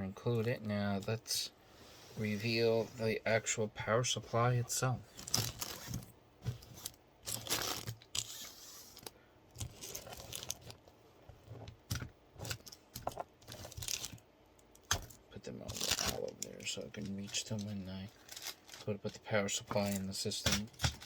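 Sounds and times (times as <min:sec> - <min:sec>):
packaging rustling and crinkling: 0:05.1 - 0:10.8, 0:11.6 - 0:14.2, 0:14.8 - 0:21.0.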